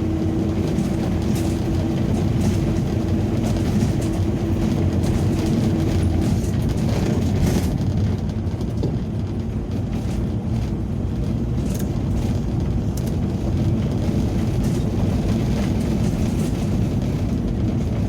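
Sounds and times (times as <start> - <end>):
engine and road rumble: 0.0 - 18.0.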